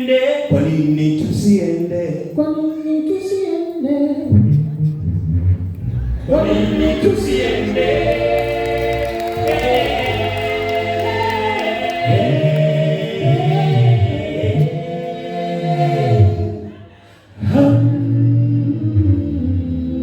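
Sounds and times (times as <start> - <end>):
choir singing a cappella: 5.8 - 20.0.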